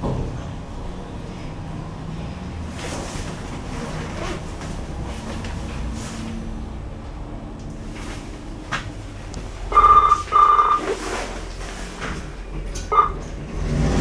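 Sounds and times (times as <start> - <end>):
steady low rumble: 0.0 - 14.0
lift signal beeping: 9.7 - 11.0, 12.4 - 13.4.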